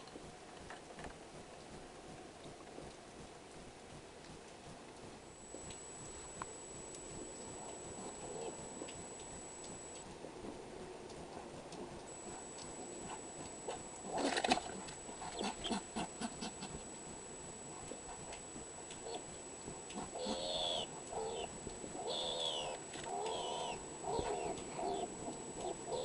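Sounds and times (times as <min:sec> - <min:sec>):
skunk chirping and cooing: 0:06.9 - 0:09.8, 0:12.2 - 0:17.0, 0:18.9 - 0:26.0.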